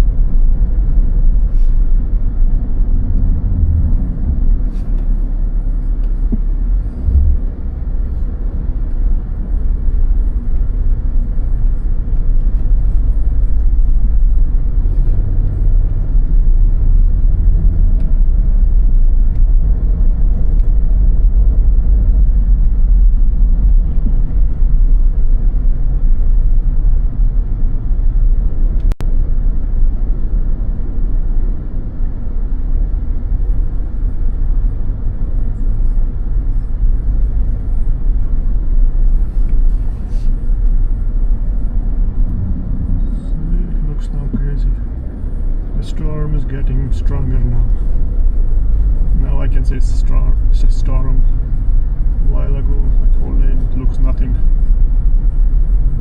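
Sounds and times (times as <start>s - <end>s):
car driving rumble: 0.0s - 56.0s.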